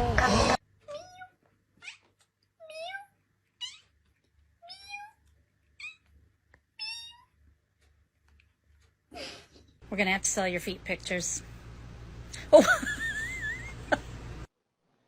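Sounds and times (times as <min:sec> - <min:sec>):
cat meowing: 0:00.9 - 0:03.9, 0:04.6 - 0:05.2, 0:06.8 - 0:07.3.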